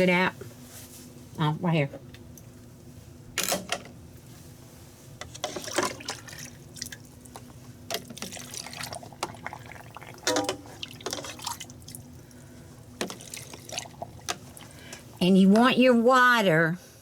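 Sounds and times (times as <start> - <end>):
liquid pouring into a jar: 8.0 - 12.0, 13.0 - 14.7.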